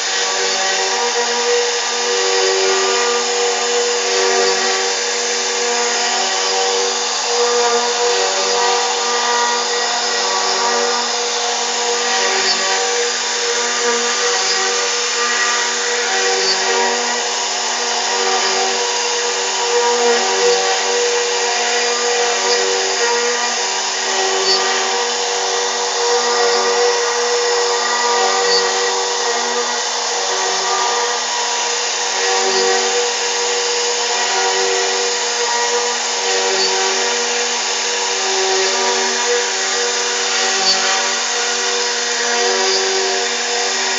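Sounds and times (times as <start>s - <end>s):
router spindle whining: 0.0s - 43.9s.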